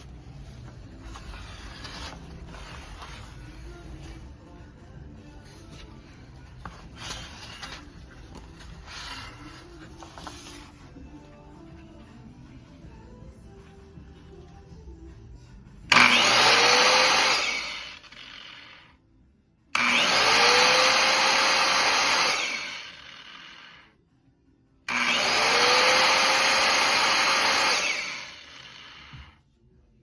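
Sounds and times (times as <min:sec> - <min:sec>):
circular saw motor whining: 0:15.9 - 0:18.8, 0:19.8 - 0:23.8, 0:24.9 - 0:29.3.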